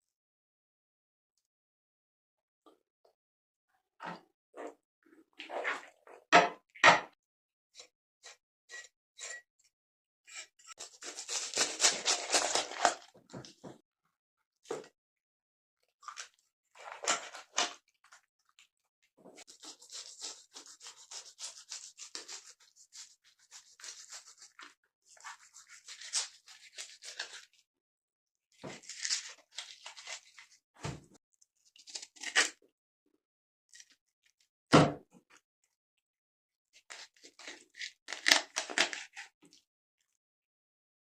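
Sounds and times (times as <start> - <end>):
knife scraping fish: 7.8 - 9.4, 10.3 - 13.1, 16.1 - 17.8, 19.4 - 27.6, 28.7 - 30.5, 31.8 - 32.6, 36.8 - 39.3.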